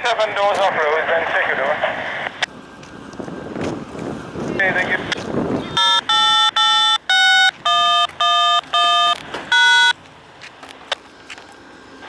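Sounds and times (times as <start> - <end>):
radio hiss: 0.0 - 2.5
two-note touch-tone beeps: 5.8 - 10.0.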